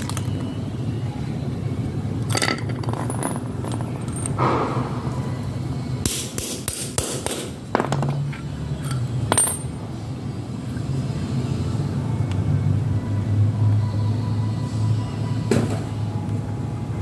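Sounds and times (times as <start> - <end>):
steady low hum: 0.0 - 17.0
metal tools clinking on metal: 2.2 - 4.4, 7.7 - 9.8.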